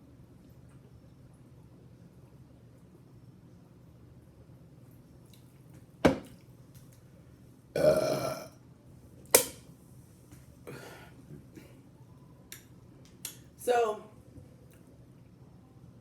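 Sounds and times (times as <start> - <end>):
woman burping: 7.8 - 8.5.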